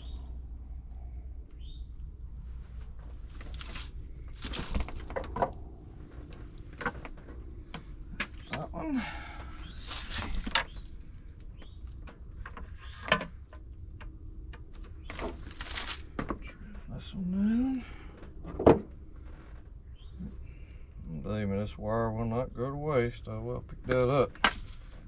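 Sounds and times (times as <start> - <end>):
hands handling wires and parts: 2.7 - 8.7, 9.6 - 16.5.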